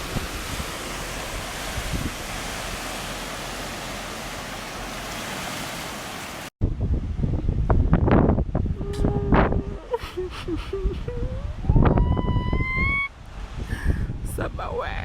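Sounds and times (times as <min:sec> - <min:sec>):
wind blowing across microphone: 0:00.0 - 0:03.1, 0:06.6 - 0:15.0.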